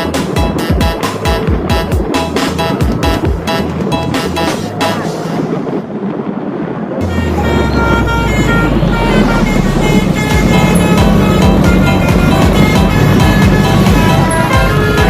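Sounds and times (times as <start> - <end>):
musical bus horn tune: 0.0 - 5.4, 7.0 - 15.0
rushing noise: 0.0 - 15.0
loud low drone: 7.0 - 15.0.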